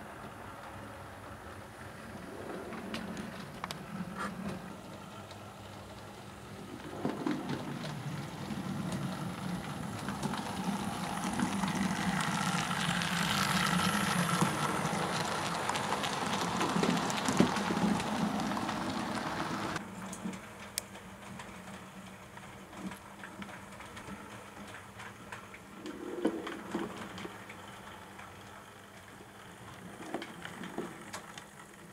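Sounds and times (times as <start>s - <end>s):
model train running on track: 0.0s - 31.9s.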